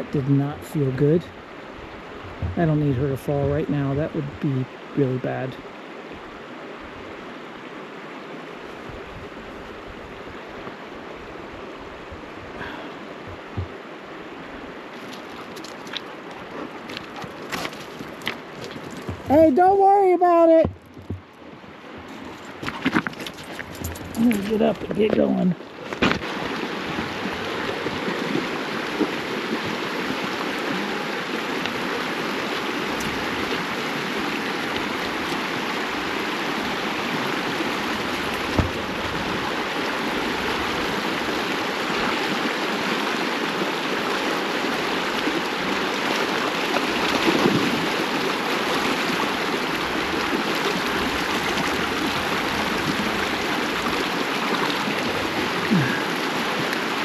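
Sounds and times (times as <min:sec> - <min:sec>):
stream rushing: 0:00.0 - 0:57.0.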